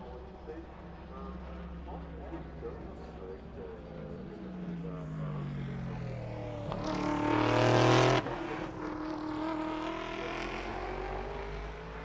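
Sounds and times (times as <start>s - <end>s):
race car engine passing: 4.5s - 12.0s.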